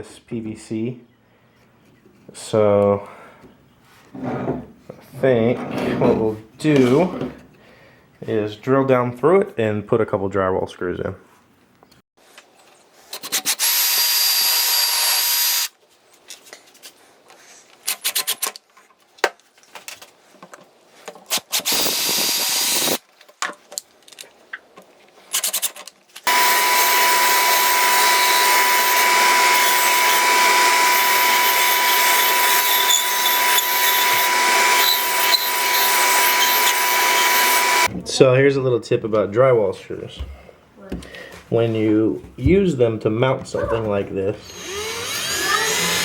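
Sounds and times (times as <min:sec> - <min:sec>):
electric drill running: 0:13.5 - 0:15.7, 0:21.6 - 0:23.0, 0:26.3 - 0:37.9, 0:44.4 - 0:46.0.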